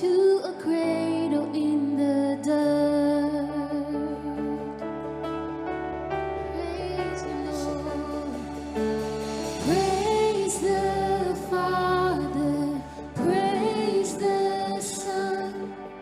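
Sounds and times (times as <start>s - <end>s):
sustained instrumental chords: 4.6s - 16.0s
person singing: 6.4s - 8.8s, 9.6s - 16.0s.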